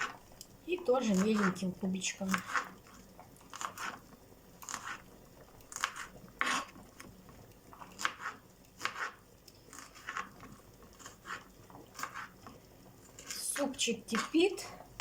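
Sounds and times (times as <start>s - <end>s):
knife cutting tomato on board: 1.0s - 1.7s, 2.3s - 4.0s, 4.6s - 5.1s, 5.7s - 6.8s, 7.8s - 12.4s, 13.1s - 14.6s.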